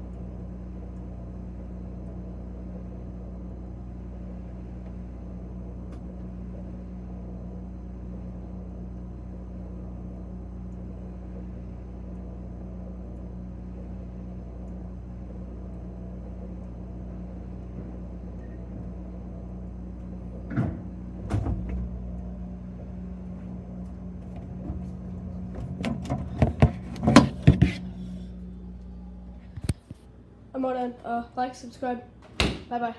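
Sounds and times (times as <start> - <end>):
refrigerator humming: 0.0 - 32.9
knocks and bumps: 20.0 - 28.2.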